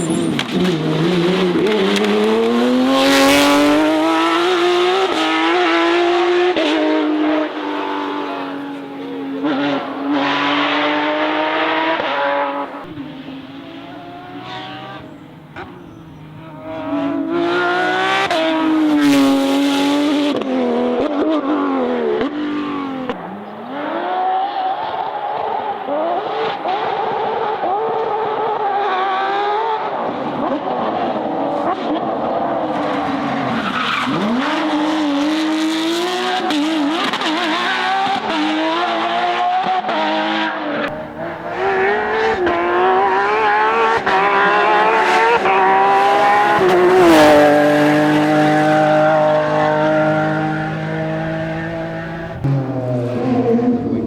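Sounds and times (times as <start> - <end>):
tyres skidding: 0.0 - 19.4, 40.8 - 54.0
rally car engines revving: 0.0 - 54.0.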